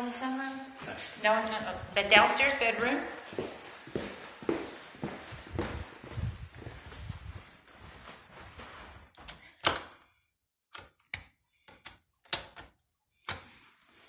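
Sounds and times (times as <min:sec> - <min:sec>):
shuffling footsteps: 0:00.3 - 0:09.3.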